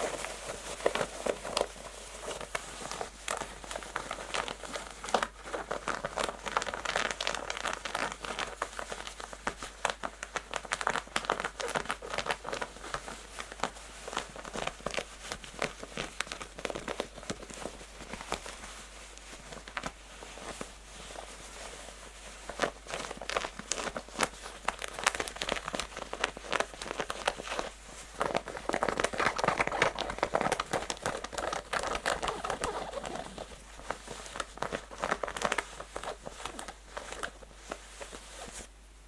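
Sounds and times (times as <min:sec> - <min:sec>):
fingernails scratching denim: 0:32.1 - 0:33.5.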